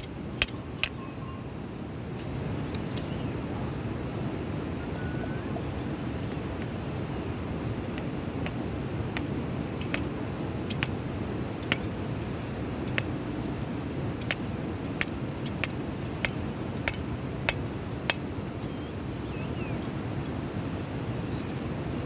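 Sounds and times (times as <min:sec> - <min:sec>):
sharp short clicks: 0:00.0 - 0:01.0, 0:09.2 - 0:11.0, 0:12.9 - 0:18.8
low background rumble: 0:00.0 - 0:22.0.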